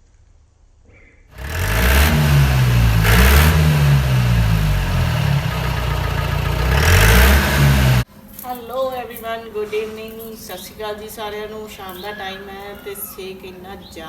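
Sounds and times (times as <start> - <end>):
car engine revving: 1.4 - 8.1.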